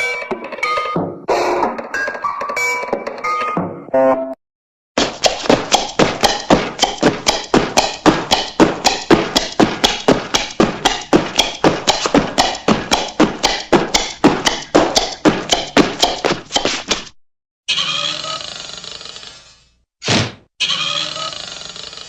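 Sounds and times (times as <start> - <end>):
rapid ringing cartoon knocks: 5.0 - 16.8.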